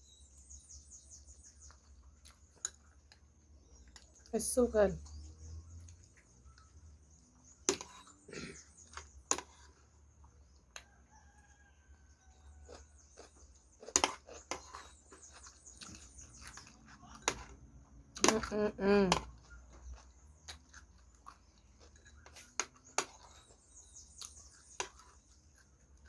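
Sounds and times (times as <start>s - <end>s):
distant rooster crowing: 10.7s - 13.0s.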